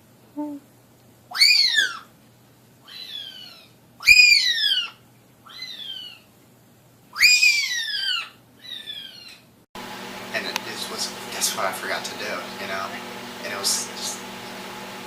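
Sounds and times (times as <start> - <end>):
parrot whistling calls: 1.3 - 2.1, 2.9 - 6.2, 7.2 - 9.4.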